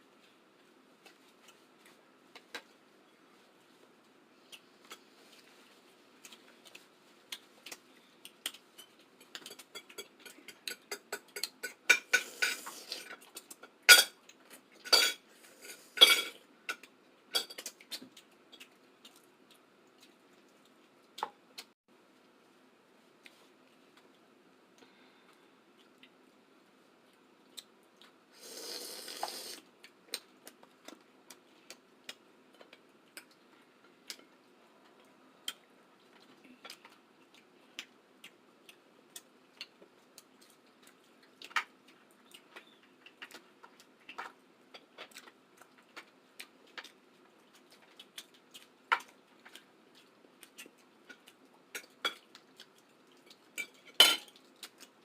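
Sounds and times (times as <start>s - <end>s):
clatter of cutlery and dishes: 14.8s - 17.7s, 53.6s - 54.4s.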